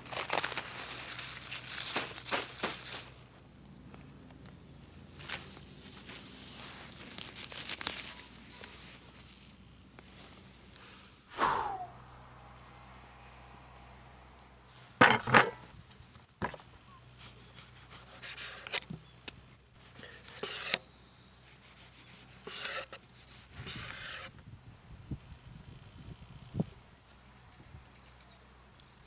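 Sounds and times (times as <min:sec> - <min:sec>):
scraping and rubbing: 0:15.0 - 0:15.7, 0:19.8 - 0:20.8, 0:21.7 - 0:24.3.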